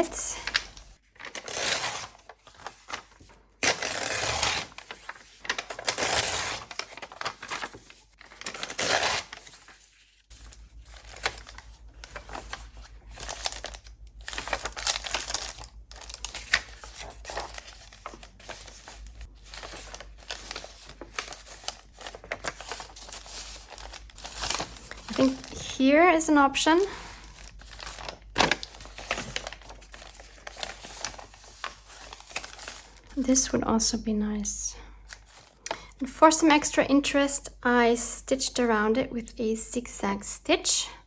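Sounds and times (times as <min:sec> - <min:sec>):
paper rustling and crinkling: 0:00.0 - 0:26.2, 0:26.8 - 0:33.4
paper tearing: 0:01.2 - 0:03.0, 0:03.6 - 0:25.7.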